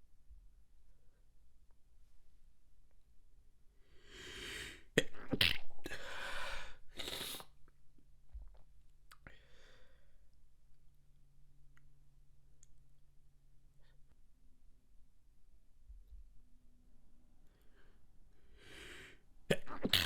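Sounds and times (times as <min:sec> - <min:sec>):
person breathing in: 0:03.8 - 0:05.2, 0:05.8 - 0:07.4, 0:09.3 - 0:10.2, 0:17.5 - 0:19.2
stifled sneeze: 0:19.5 - 0:20.0.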